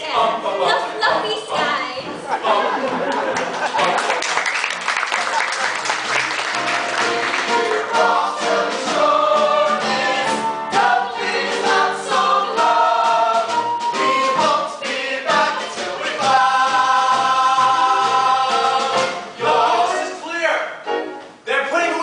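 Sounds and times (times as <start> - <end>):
ensemble singing in chorus: 0.0 - 4.1, 6.8 - 20.2.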